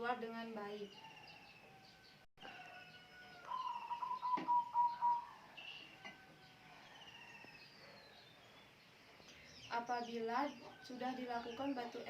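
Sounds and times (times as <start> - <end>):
small birds chirping: 0.0 - 12.0
whistled note: 4.0 - 5.2.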